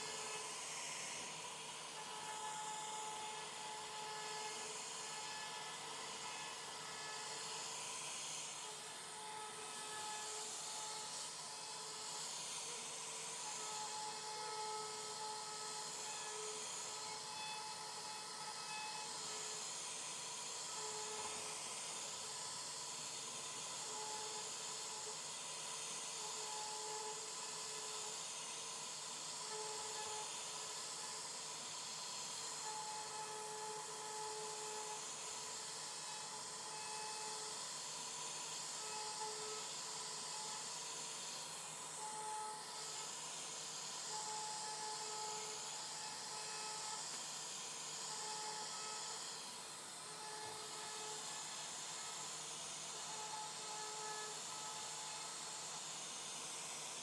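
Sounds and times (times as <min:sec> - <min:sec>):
cnc router spindle hiss: 0:00.0 - 0:57.0
machine motor whine: 0:00.0 - 0:57.0.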